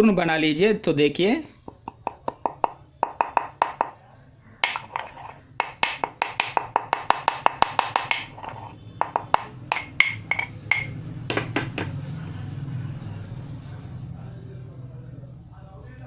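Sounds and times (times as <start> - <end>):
pounding strikes on peppercorn: 1.7 - 4.0, 5.6 - 11.8.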